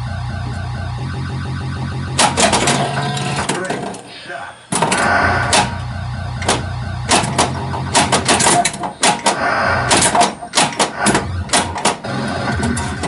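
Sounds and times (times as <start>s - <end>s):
electronic sound effects: 0.0s - 13.0s
pinball machine clacks: 2.2s - 4.0s, 4.7s - 5.8s, 6.4s - 13.0s.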